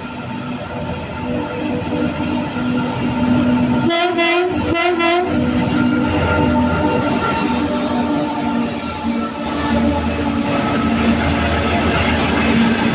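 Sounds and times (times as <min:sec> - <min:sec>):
locomotive engine with turbo whistle: 0:00.0 - 0:12.9
locomotive horn blasts: 0:03.8 - 0:05.4.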